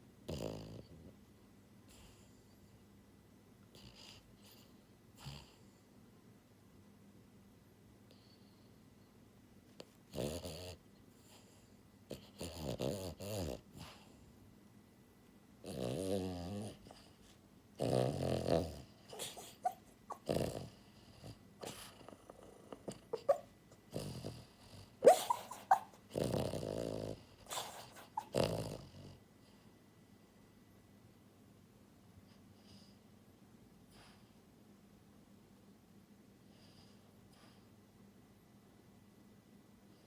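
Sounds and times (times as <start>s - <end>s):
dog snoring and snorting: 0.2s - 1.2s, 1.9s - 2.5s, 3.7s - 5.9s, 9.8s - 14.3s, 15.6s - 29.6s.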